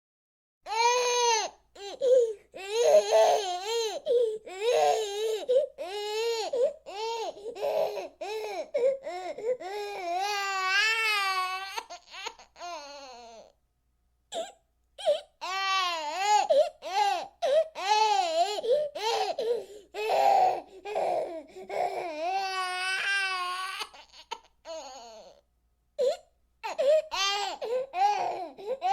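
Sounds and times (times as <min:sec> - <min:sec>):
baby crying: 0:00.7 - 0:13.6, 0:14.3 - 0:25.4, 0:26.0 - 0:28.9.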